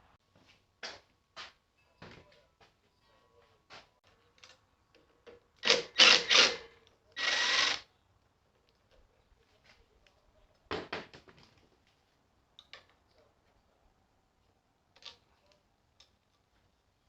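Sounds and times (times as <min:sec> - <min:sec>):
handheld power tool running: 0:05.6 - 0:06.6, 0:07.2 - 0:07.8.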